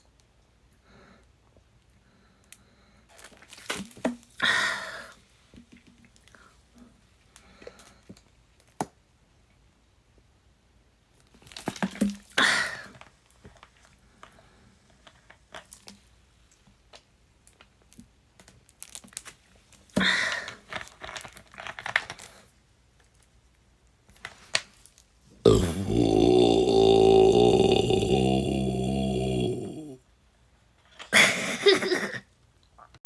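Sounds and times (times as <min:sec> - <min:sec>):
crinkling and rustling handling: 0:03.1 - 0:04.1.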